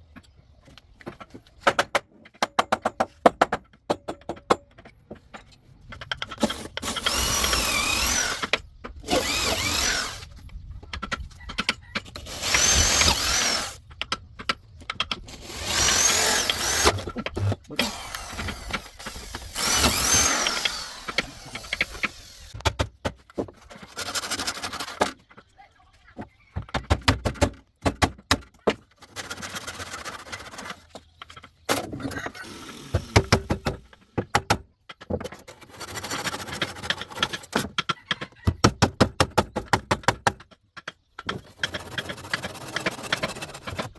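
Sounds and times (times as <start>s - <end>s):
power tool whining: 6.4s - 10.3s, 12.1s - 13.8s, 15.3s - 22.6s, 32.4s - 34.0s.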